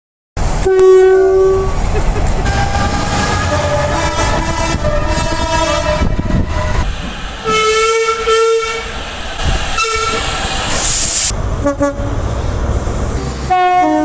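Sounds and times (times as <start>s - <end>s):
train rumble: 0.4s - 14.0s
train horn blasts: 0.6s - 8.9s, 9.8s - 10.2s, 11.6s - 12.2s, 13.4s - 14.0s
short hiss: 9.1s - 11.3s.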